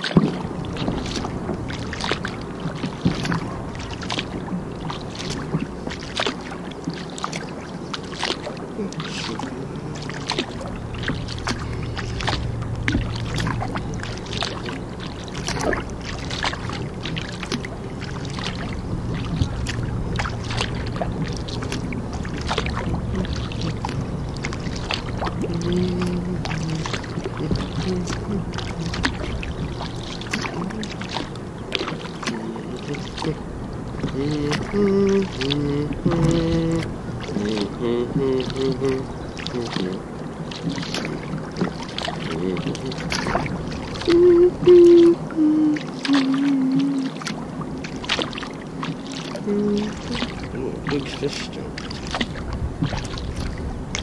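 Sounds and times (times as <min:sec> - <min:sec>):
low steady hum: 0:00.0 - 0:54.0
paddle splashing water: 0:00.0 - 0:54.0
water lapping against hull: 0:00.0 - 0:54.0.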